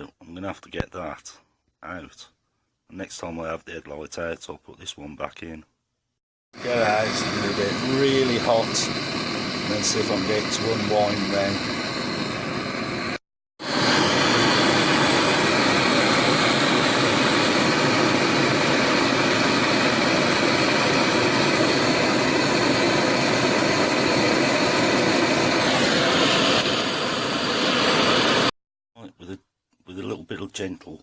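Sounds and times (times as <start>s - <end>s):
heating tool roaring: 6.6s - 28.5s.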